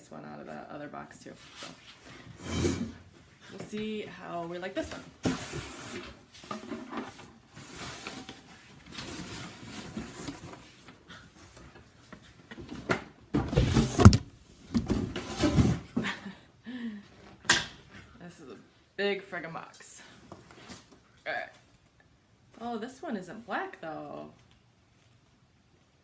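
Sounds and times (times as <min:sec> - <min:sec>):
cardboard box rustling and scraping: 0:05.2 - 0:10.8, 0:13.4 - 0:16.0.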